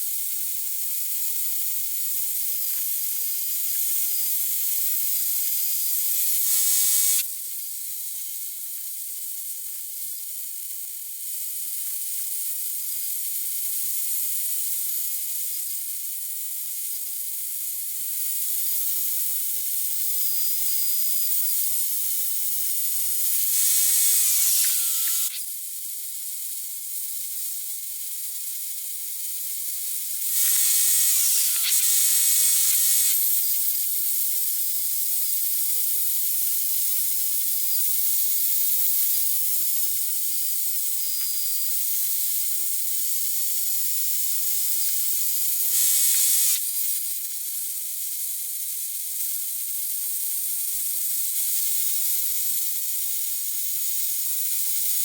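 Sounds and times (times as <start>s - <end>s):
power tool buzzing on concrete: 6.2s - 7.2s, 22.7s - 25.4s, 30.2s - 34.0s, 43.7s - 47.0s.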